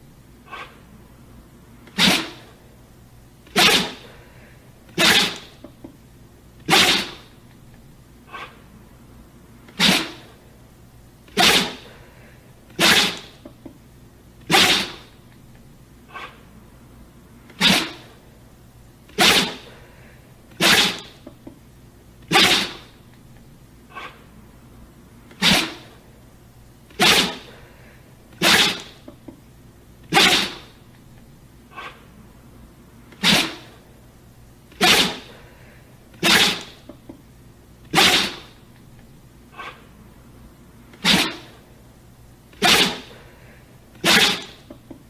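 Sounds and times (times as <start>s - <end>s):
dog sneezing: 0.5s - 0.8s, 1.8s - 2.6s, 3.4s - 5.6s, 6.6s - 7.4s, 8.3s - 8.6s, 9.7s - 10.4s, 11.3s - 13.5s, 14.4s - 15.2s, 16.1s - 16.4s, 17.5s - 18.2s, 19.1s - 21.3s, 22.3s - 23.0s, 23.9s - 24.2s, 25.3s - 26.0s, 26.9s - 29.1s, 30.1s - 30.8s, 31.7s - 32.1s, 33.1s - 33.8s, 34.7s - 37.0s, 37.9s - 38.6s, 39.5s - 39.9s, 40.9s - 41.6s, 42.5s - 44.8s.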